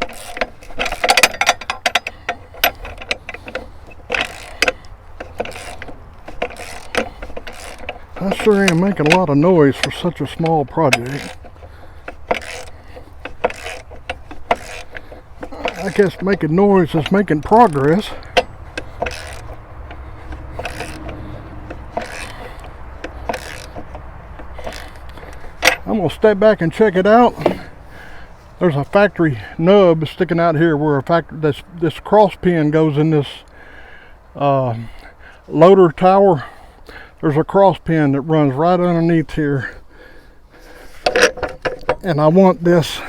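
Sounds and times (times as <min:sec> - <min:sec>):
short scraping strokes: 0:00.0 - 0:25.9
metal clinks: 0:00.0 - 0:26.0
ratchet wrench clicking: 0:00.0 - 0:26.0.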